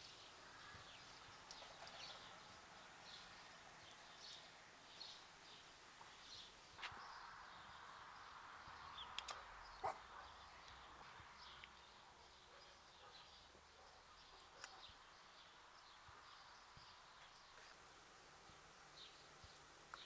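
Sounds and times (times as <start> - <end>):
faint birds chirping: 0.0 - 20.0
sharp clicks: 9.1 - 9.4.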